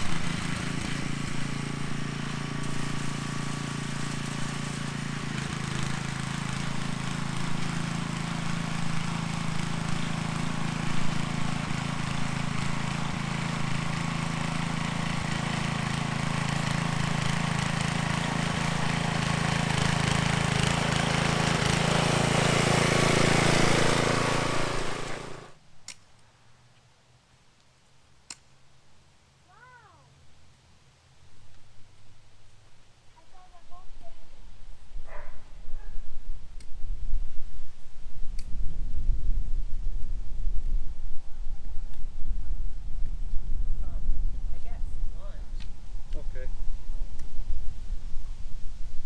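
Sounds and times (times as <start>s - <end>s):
small engine running: 0.0s - 25.6s.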